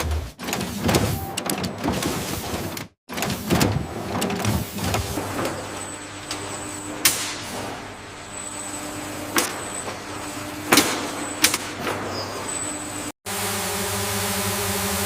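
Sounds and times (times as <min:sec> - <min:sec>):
machinery humming: 0:00.0 - 0:15.0
electronic music: 0:01.1 - 0:01.8.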